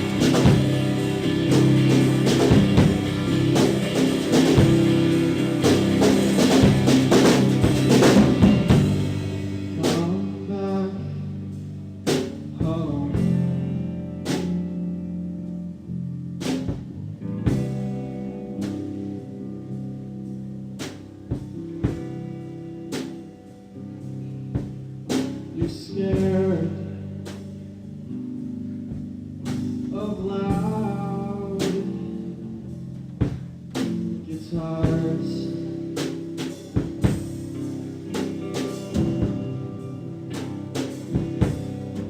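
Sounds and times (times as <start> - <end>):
drum kit hits: 0.0 - 10.3, 36.0 - 42.0
guitars playing chords: 0.0 - 42.0.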